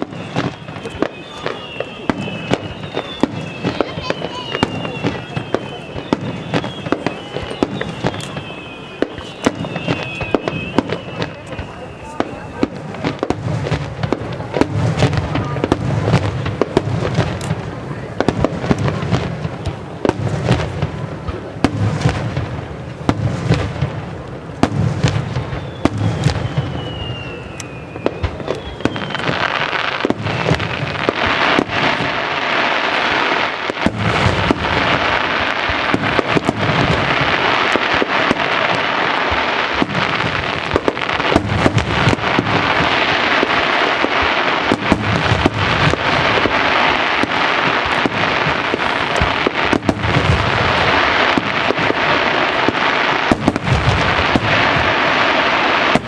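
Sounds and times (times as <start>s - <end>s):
falling firework whistle: 0.0s - 56.0s
fireworks bursting: 0.0s - 56.0s
fireworks crackle: 0.0s - 56.0s.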